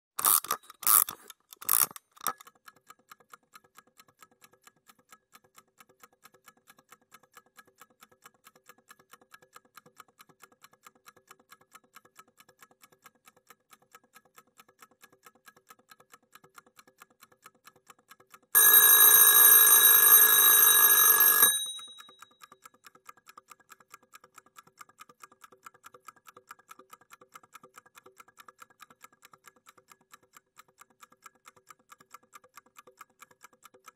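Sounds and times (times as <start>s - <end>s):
alarm clock clicks: 0.2s - 2.4s, 18.6s - 22.6s
clock ticking fast: 0.2s - 33.9s
alarm clock bell ringing: 18.6s - 22.2s.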